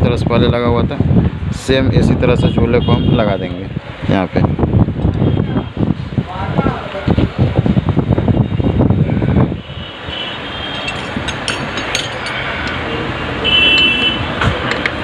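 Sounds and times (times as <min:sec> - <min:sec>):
street traffic rumble: 0:00.0 - 0:15.0
metal parts clattering and clicking: 0:10.8 - 0:12.8.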